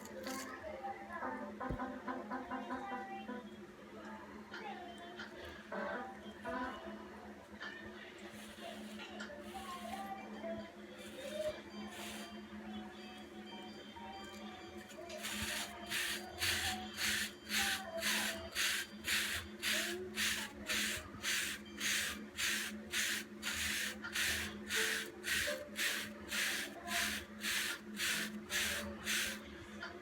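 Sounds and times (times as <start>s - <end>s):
hairbrush stroking short hair: 15.2s - 29.4s.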